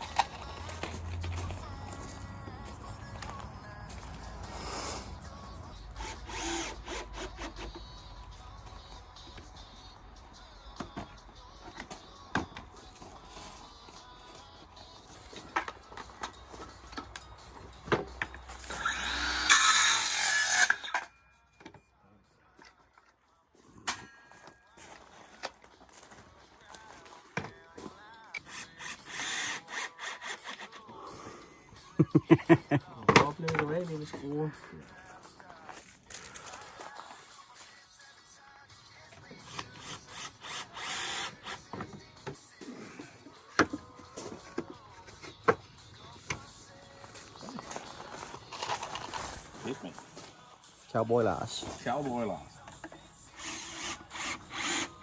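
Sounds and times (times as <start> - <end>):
power drill driving a screw: 6.0 - 7.8, 18.6 - 21.0, 28.4 - 30.8, 39.5 - 41.7, 53.4 - 55.0.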